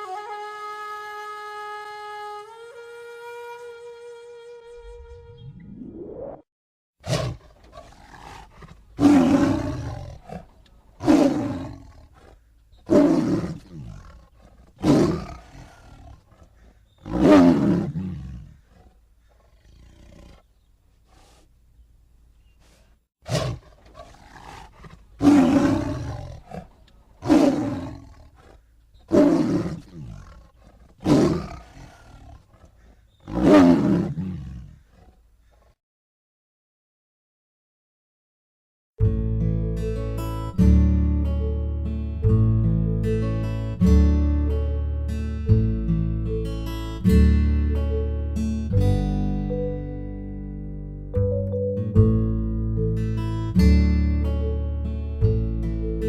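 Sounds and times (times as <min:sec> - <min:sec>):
tiger roaring: 0:07.0 - 0:20.5, 0:23.2 - 0:35.7.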